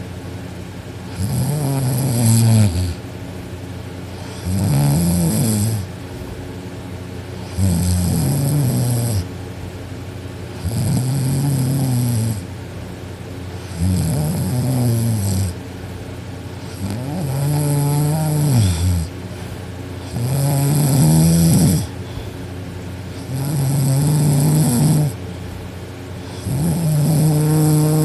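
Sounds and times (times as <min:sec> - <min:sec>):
girl snoring loudly: 0:01.1 - 0:03.0, 0:04.3 - 0:05.9, 0:07.4 - 0:09.3, 0:10.6 - 0:12.5, 0:13.7 - 0:15.6, 0:16.6 - 0:19.1, 0:20.0 - 0:22.0, 0:23.2 - 0:25.2, 0:26.2 - 0:28.0.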